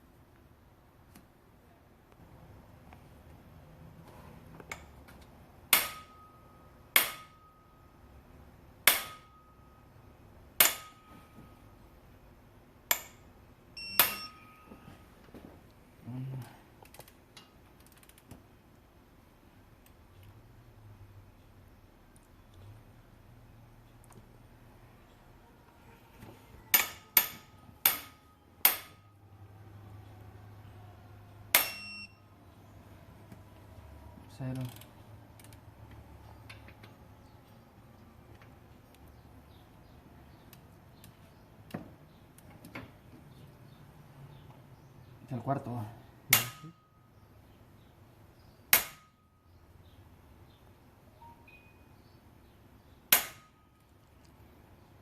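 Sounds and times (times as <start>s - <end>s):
ringing metal clank: 5.8s - 7.9s, 8.9s - 9.9s, 10.6s - 11.6s, 12.9s - 14.8s, 31.6s - 32.1s.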